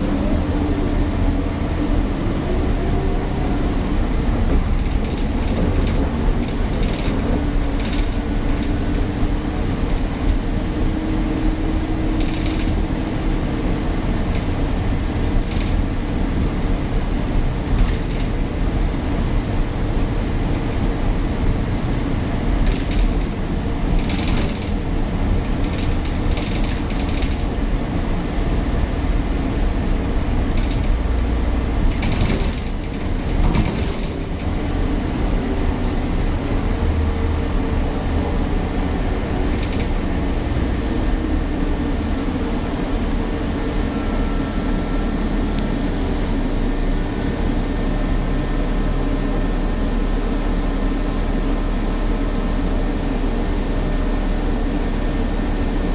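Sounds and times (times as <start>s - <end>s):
bus engine and road rumble: 0.0s - 55.9s
body creaking and rattling: 4.4s - 16.1s, 17.2s - 18.5s, 20.0s - 27.7s, 30.3s - 36.2s, 38.8s - 40.5s
short clatters: 4.5s - 10.6s, 12.0s - 13.5s, 17.6s - 18.4s, 22.6s - 27.6s, 30.5s - 34.8s.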